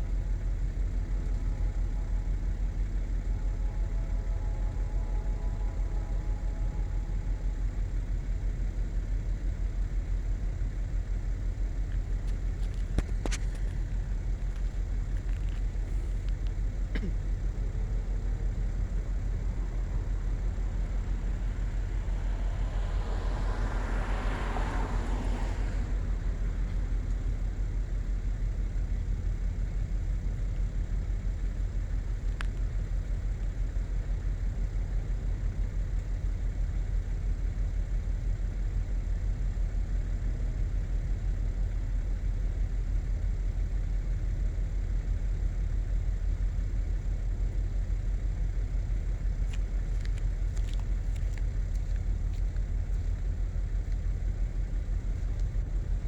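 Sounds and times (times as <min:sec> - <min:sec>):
steady low rumble: 0:00.0 - 0:56.0
vehicle passing by: 0:18.9 - 0:27.7.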